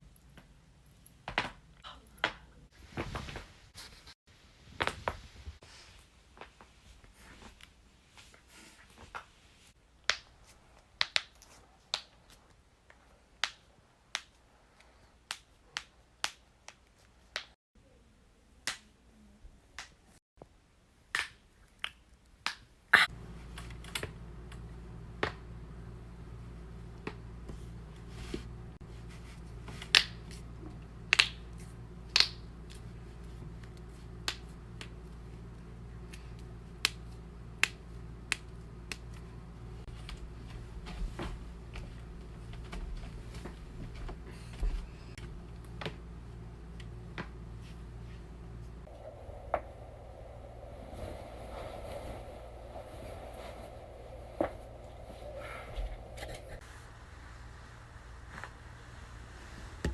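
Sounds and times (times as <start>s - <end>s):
steady low hum: 23.0s - 59.9s.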